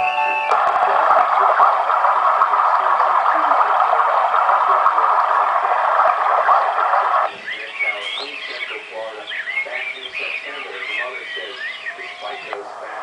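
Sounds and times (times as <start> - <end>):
running water sound from small speaker: 0.0 - 13.0.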